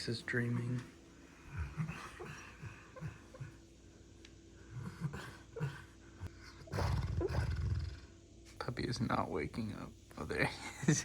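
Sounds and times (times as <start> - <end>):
puppy woofing and grunting: 1.4 - 3.6, 4.7 - 8.1.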